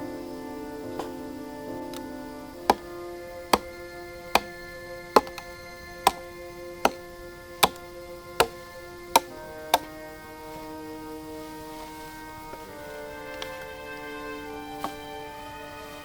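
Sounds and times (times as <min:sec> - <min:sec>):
background music with held notes: 0:00.0 - 0:16.0
sharp knocks at steady pace: 0:02.7 - 0:02.9, 0:03.5 - 0:04.6, 0:05.2 - 0:08.6, 0:09.2 - 0:09.9.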